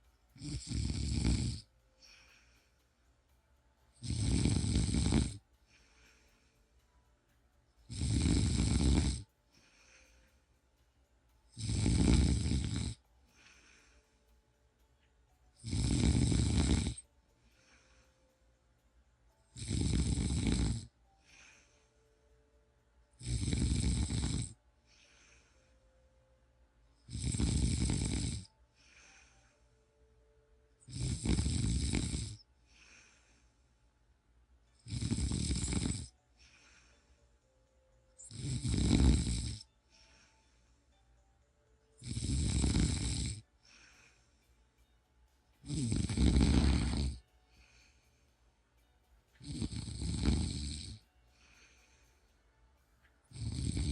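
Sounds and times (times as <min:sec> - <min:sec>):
person snoring: 0:00.4 - 0:02.6, 0:04.0 - 0:06.2, 0:07.9 - 0:10.1, 0:11.5 - 0:14.2, 0:15.6 - 0:18.1, 0:19.5 - 0:22.0, 0:23.2 - 0:25.8, 0:27.0 - 0:29.6, 0:30.8 - 0:33.5, 0:34.7 - 0:37.2, 0:38.2 - 0:40.6, 0:42.0 - 0:44.4, 0:45.6 - 0:48.1, 0:49.4 - 0:52.1, 0:53.3 - 0:53.9
faint breath: 0:01.8 - 0:03.9, 0:05.4 - 0:07.8, 0:09.2 - 0:11.4, 0:13.0 - 0:15.7, 0:17.0 - 0:19.5, 0:21.0 - 0:22.6, 0:24.7 - 0:27.1, 0:28.4 - 0:30.5, 0:32.4 - 0:34.8, 0:36.1 - 0:38.4, 0:39.6 - 0:42.5, 0:43.1 - 0:49.7, 0:50.8 - 0:53.9.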